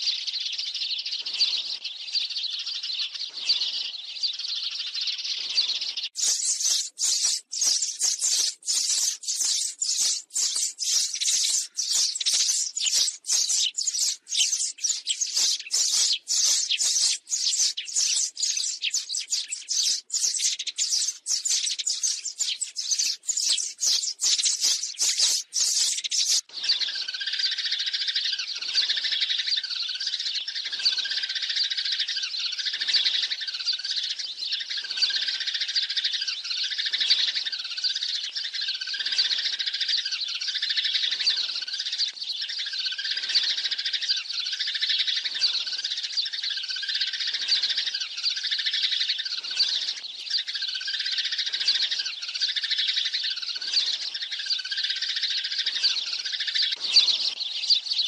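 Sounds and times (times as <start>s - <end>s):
sparrows chirping and chattering: 0.0s - 58.0s.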